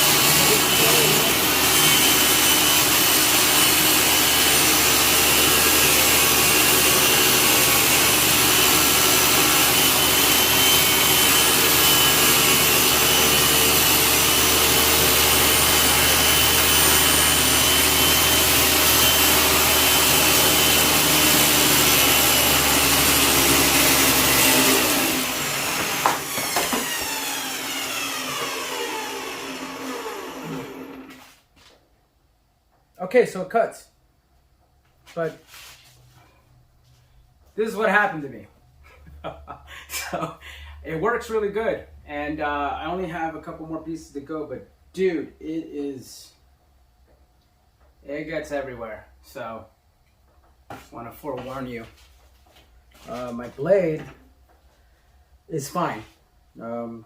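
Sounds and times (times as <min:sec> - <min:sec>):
saw blade winding down: 0:00.0 - 0:31.3
table saw cutting plexiglass: 0:00.0 - 0:31.4.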